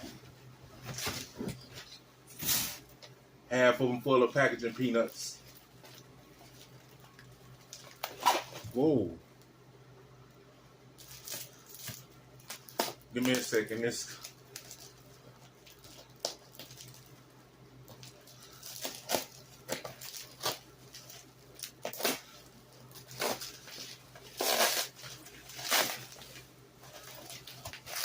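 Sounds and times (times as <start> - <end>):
packing peanuts and cardboard rustling: 11.0 - 17.1, 17.9 - 28.0.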